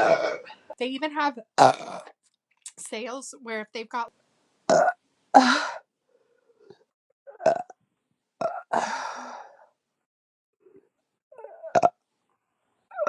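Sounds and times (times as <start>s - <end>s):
woman burping: 0.0s - 0.8s, 1.6s - 2.2s, 4.7s - 5.8s, 7.3s - 7.8s, 8.4s - 9.2s, 11.4s - 12.0s.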